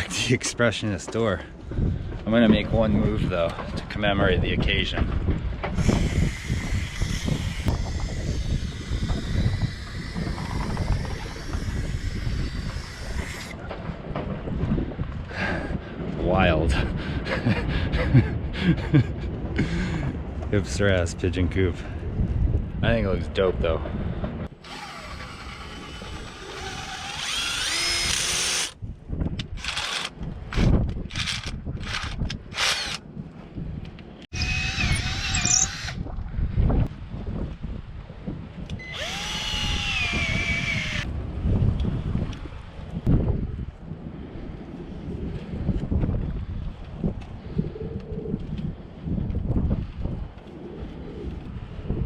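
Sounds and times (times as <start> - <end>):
wind buffeting microphone: 0.0 - 52.0
power drill driving screws: 5.8 - 13.6, 24.6 - 28.8, 29.6 - 33.0, 34.4 - 36.0, 38.8 - 41.0.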